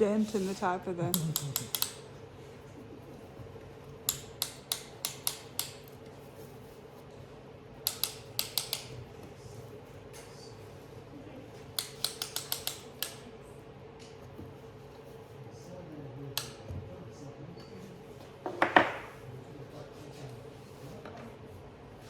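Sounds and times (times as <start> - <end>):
piston being tapped down: 1.1 - 2.0, 4.1 - 6.0, 7.8 - 9.0, 11.8 - 13.2.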